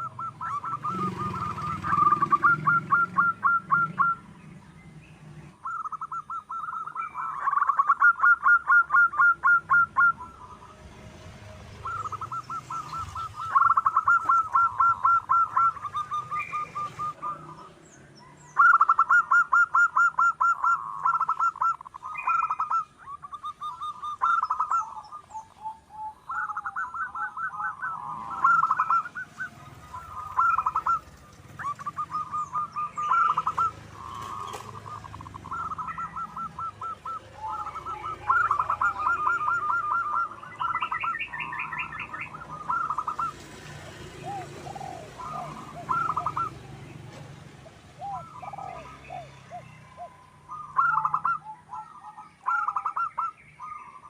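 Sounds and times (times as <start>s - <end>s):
faint small birds chirping: 0.0s - 11.0s, 11.6s - 54.0s
dove singing staccato coos: 0.0s - 54.0s.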